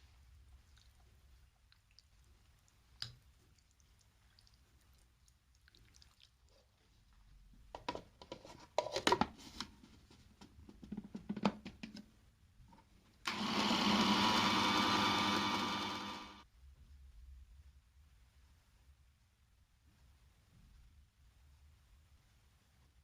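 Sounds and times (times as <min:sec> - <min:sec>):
small motor running: 0:13.3 - 0:16.4.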